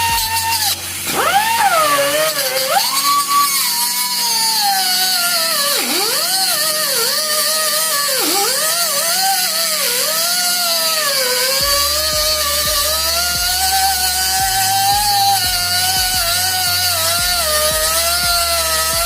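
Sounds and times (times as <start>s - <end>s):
steady hiss: 0.0s - 5.5s
power tool motor whining: 0.0s - 19.0s.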